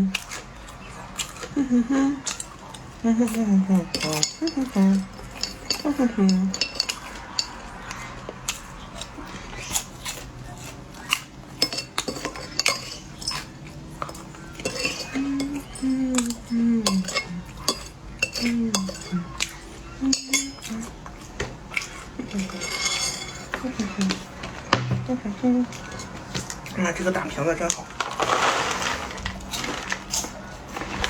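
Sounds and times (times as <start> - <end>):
person humming: 1.5 - 2.2, 15.1 - 17.5, 25.0 - 25.9
cutlery and dishes clinking: 2.2 - 31.0.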